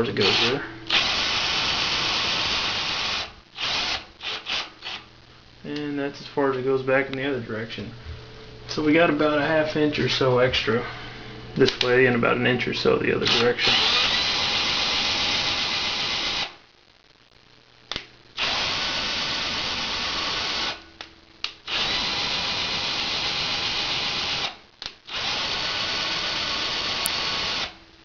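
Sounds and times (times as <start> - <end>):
power drill whining: 0.2 - 5.0, 13.3 - 16.6, 18.4 - 20.8, 21.7 - 24.5, 25.1 - 27.8
drill trigger blips: 0.2 - 5.1, 13.3 - 16.5, 21.4 - 27.8.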